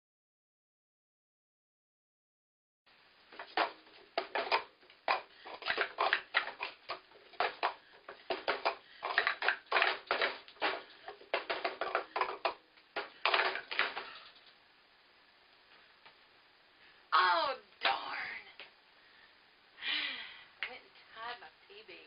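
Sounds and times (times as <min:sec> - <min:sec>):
plastic cups clattering: 0:03.4 - 0:14.6.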